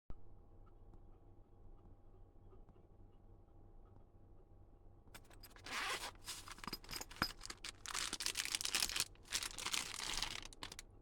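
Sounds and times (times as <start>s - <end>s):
packaging rasping and scraping: 5.2s - 10.8s.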